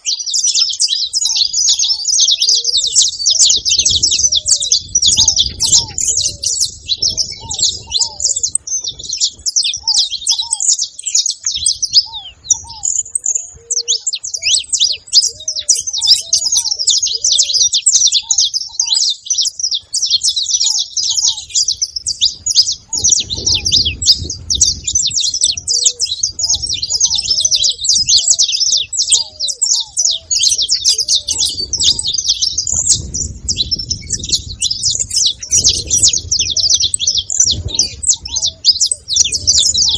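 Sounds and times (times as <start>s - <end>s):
finches chirping and singing: 0.0s - 39.9s
soft low arched bird notes: 0.0s - 39.9s.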